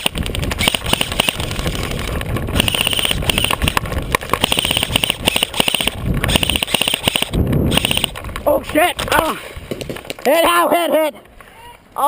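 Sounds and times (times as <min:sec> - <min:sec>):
airsoft guns firing in bursts: 0:00.0 - 0:08.4.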